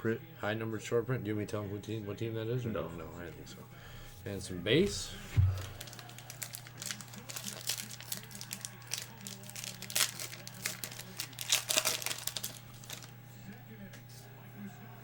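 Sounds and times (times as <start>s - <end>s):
steady low hum: 1.0s - 15.0s
foil wrappers crinkling and tearing: 4.9s - 13.2s.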